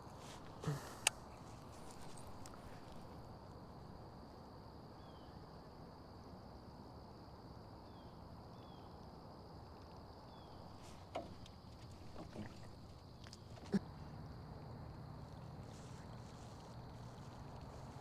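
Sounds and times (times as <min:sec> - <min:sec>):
high insect drone: 0:10.3 - 0:18.0.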